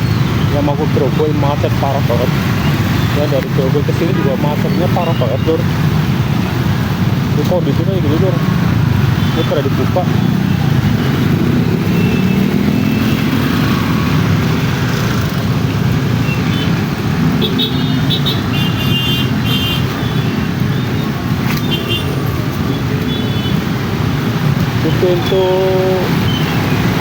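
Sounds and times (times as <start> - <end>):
vehicle engines rumbling: 0.0 - 27.0.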